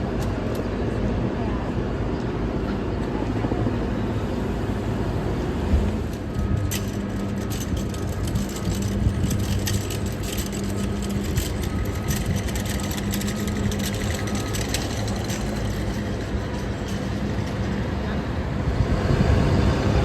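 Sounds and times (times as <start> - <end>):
vehicle humming: 0.0 - 20.0
small clicks and rattles: 5.8 - 18.0.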